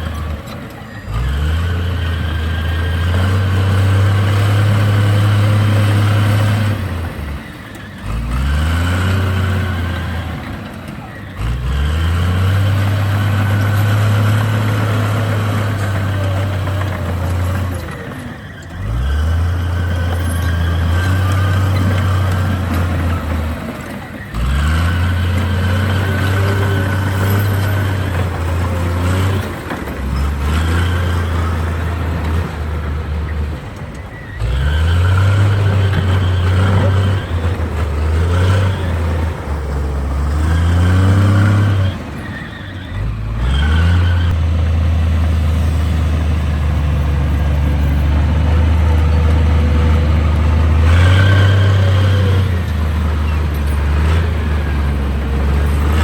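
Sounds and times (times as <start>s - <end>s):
bulldozer diesel engine revving: 0.0s - 56.0s
high squeal: 13.2s - 32.0s, 32.9s - 44.4s.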